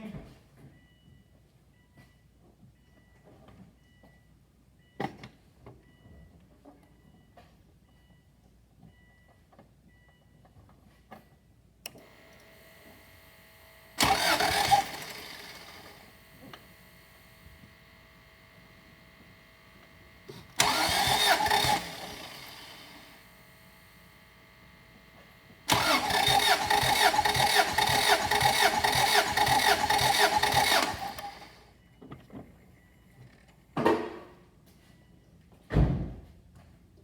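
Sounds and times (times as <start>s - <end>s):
car engine cranking: 12.0s - 31.6s.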